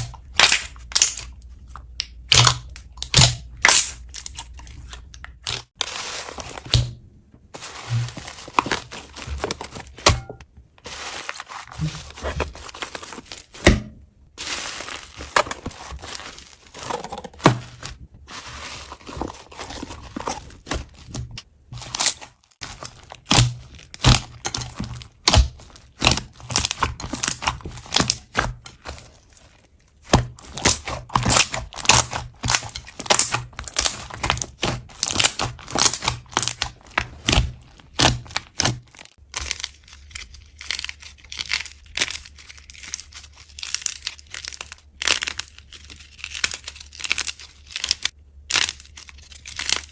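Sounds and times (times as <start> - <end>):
slime crackling and popping: 0.0 - 5.8, 21.9 - 29.2, 30.0 - 49.9.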